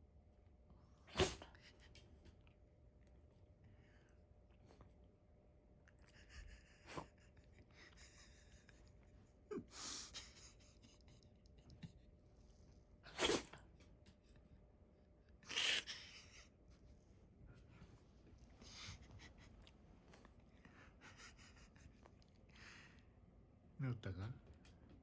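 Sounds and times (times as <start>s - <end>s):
dog sneezing: 1.1s - 1.7s, 13.1s - 13.6s, 15.4s - 16.4s.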